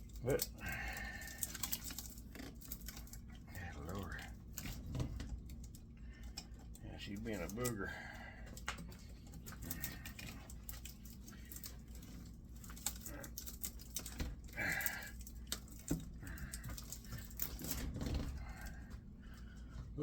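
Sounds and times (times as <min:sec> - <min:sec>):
hand tools clicking and scraping metal: 0:00.0 - 0:20.0.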